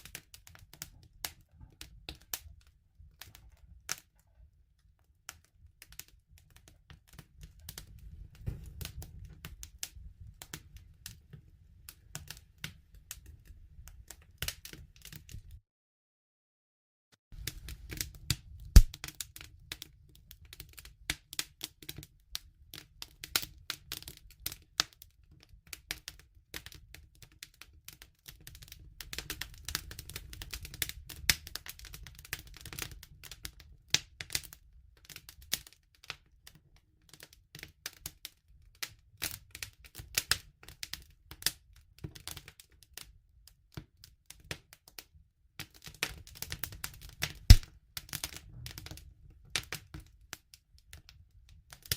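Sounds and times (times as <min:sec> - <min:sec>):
campfire crackling and popping: 0:00.0 - 0:04.2, 0:05.3 - 0:15.6, 0:17.4 - 0:25.0, 0:25.7 - 0:35.6, 0:45.6 - 0:50.0.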